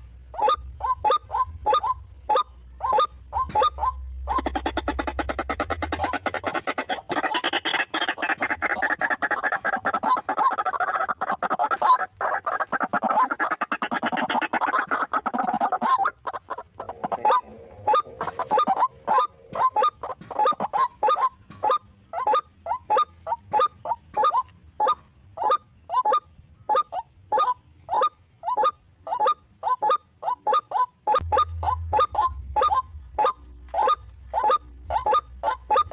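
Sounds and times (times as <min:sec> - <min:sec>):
waterhen croaking calls: 0:00.0 - 0:35.9.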